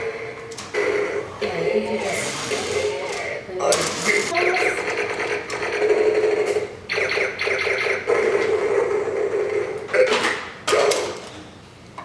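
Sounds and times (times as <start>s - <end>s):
robot toy electronic sound effects: 0.0s - 1.4s, 2.2s - 10.1s.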